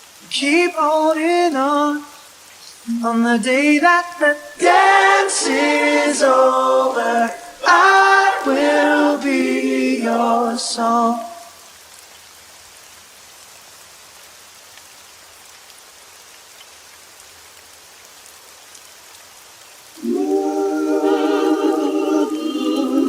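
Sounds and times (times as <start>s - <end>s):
steady rain: 0.0s - 23.0s
man singing: 0.2s - 2.2s, 2.8s - 8.5s, 10.5s - 11.4s.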